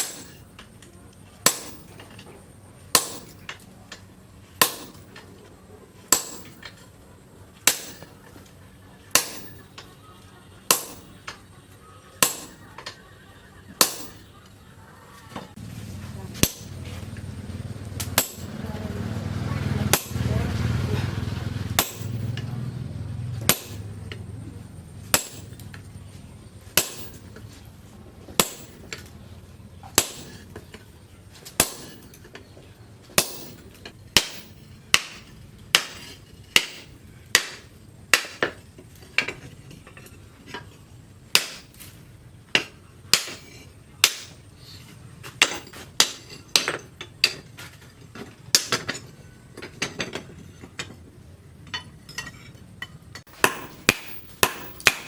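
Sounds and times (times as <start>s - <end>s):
hammer striking steel on anvil: 0.0s - 0.5s, 1.4s - 2.2s, 2.9s - 3.6s, 4.6s - 5.3s, 6.1s - 6.8s, 7.6s - 8.2s, 9.1s - 10.0s, 10.7s - 11.4s, 12.2s - 13.0s, 13.8s - 14.4s, 16.2s - 17.3s, 17.9s - 19.2s, 19.8s - 22.8s, 23.4s - 24.3s, 25.0s - 25.9s, 26.7s - 27.6s, 28.3s - 29.1s, 29.9s - 30.7s, 31.4s - 32.4s, 33.0s - 38.6s, 41.3s - 44.5s, 45.2s - 47.4s, 53.2s - 55.0s.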